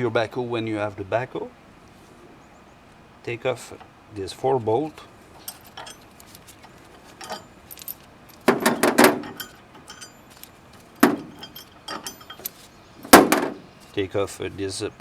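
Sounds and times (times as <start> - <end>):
metal tools and bolts clanking: 5.4 - 14.0.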